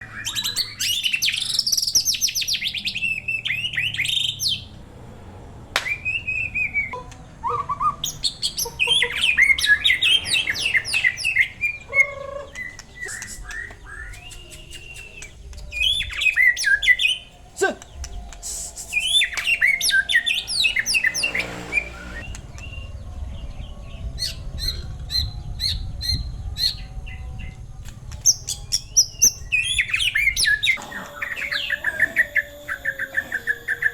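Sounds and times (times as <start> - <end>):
bird singing whistled phrases: 17.8 - 21.6
sharp bird chip notes: 17.8 - 22.9.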